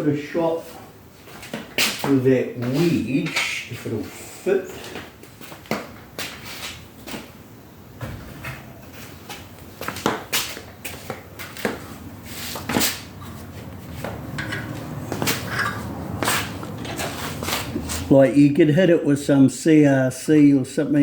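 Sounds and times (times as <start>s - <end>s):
metal tools clicking and knocking: 14.3s - 16.0s.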